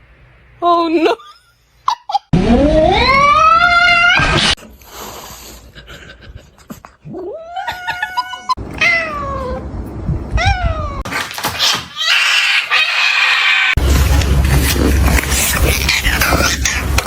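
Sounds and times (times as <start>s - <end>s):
scratchy noise: 4.0s - 4.6s, 13.8s - 17.0s
cat meowing: 7.1s - 9.6s, 10.4s - 13.8s.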